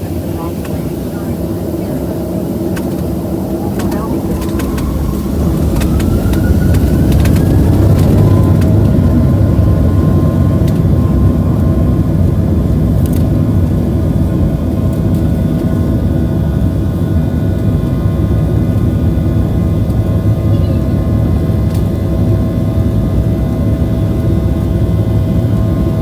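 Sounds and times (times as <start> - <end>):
loud low engine rumble: 0.0 - 14.8
jet engine whine: 0.0 - 26.0.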